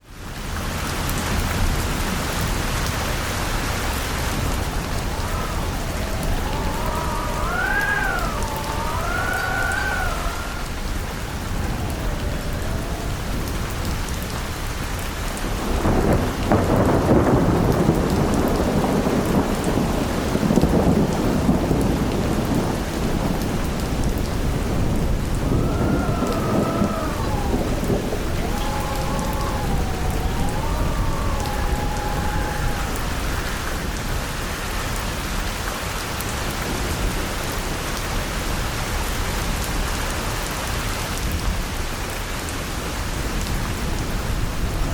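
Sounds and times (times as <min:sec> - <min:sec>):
heavy rain: 0:00.0 - 0:44.9
whistling wind: 0:01.6 - 0:35.2, 0:42.9 - 0:44.9
deep thunder rumble: 0:02.8 - 0:34.5.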